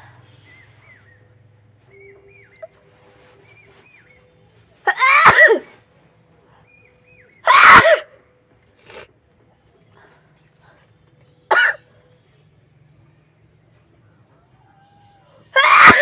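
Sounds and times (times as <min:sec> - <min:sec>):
woman sneezing loudly: 0:04.9 - 0:05.7, 0:07.5 - 0:08.1, 0:15.6 - 0:16.0.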